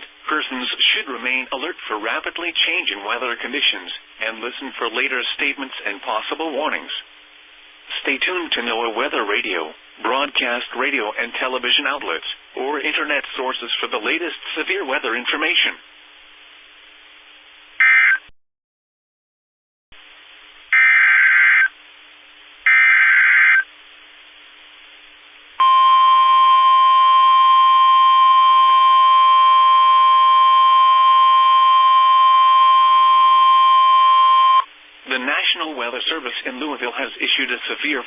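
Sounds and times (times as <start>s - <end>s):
faint radio hiss: 0.0s - 18.2s, 20.0s - 27.2s, 33.2s - 38.0s
harsh digital data bursts: 20.8s - 21.7s, 22.7s - 23.7s
loud electronic alert tone: 20.8s - 21.7s, 22.7s - 23.7s.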